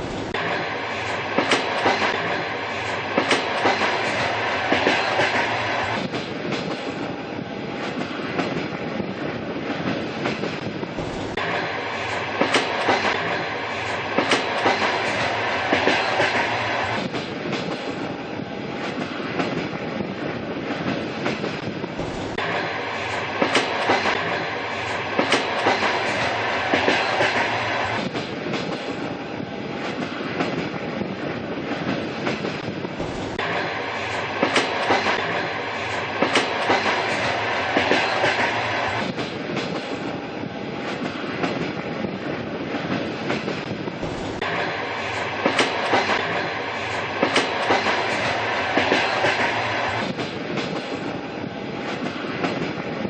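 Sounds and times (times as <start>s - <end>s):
wheels clacking over rail joints: 0.0s - 7.0s, 9.8s - 18.1s, 20.8s - 29.1s, 31.7s - 40.1s, 42.9s - 51.1s
train carriages rumbling: 0.0s - 53.0s.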